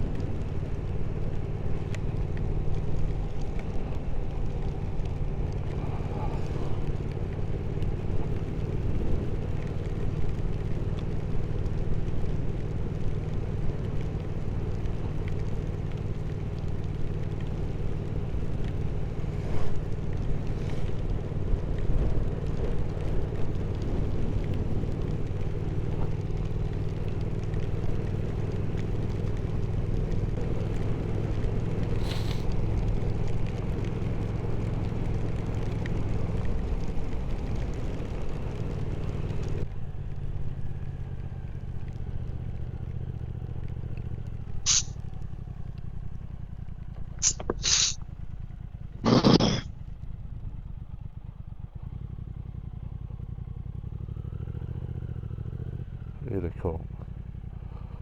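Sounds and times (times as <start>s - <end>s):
motorcycle engine cruising: 0.0s - 58.0s
wind and road noise: 0.0s - 58.0s.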